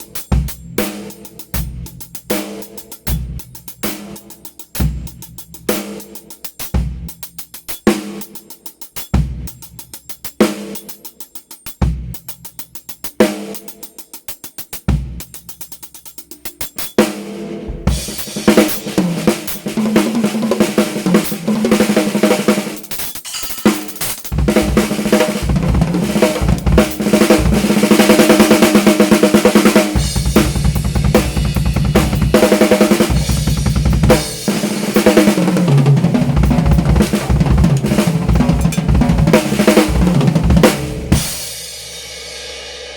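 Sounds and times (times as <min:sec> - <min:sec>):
drum kit playing: 0:00.0 - 0:42.9
bass drum and snare strokes: 0:14.6 - 0:41.9
crashing cymbals: 0:22.7 - 0:25.5.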